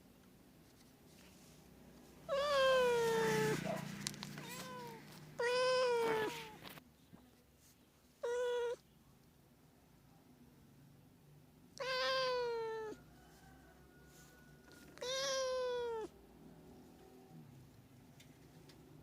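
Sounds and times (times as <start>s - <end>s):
cat meowing: 2.3s - 3.7s, 4.4s - 6.7s, 8.2s - 8.8s, 11.8s - 13.0s, 14.9s - 16.1s.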